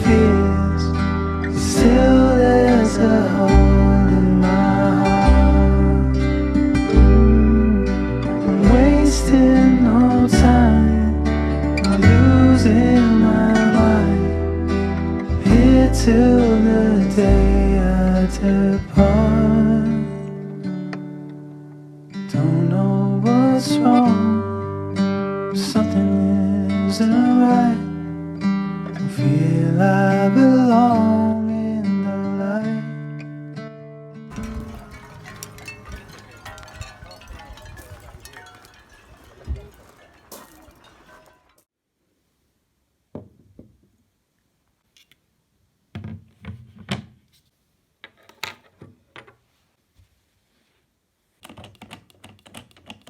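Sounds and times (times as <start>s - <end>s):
acoustic guitar song: 0.0s - 41.4s
objects knocking on hard surface: 34.3s - 41.3s.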